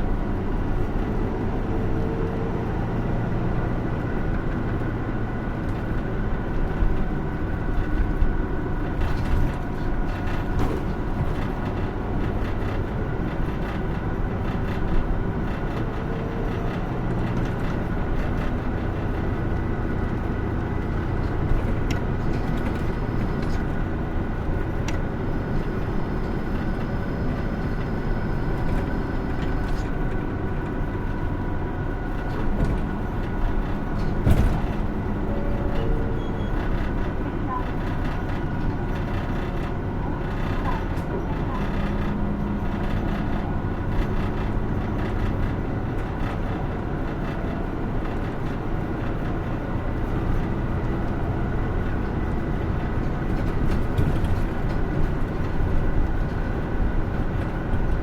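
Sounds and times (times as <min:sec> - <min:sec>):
bus diesel engine drone: 0:00.0 - 0:58.0
road rumble: 0:00.0 - 0:58.0.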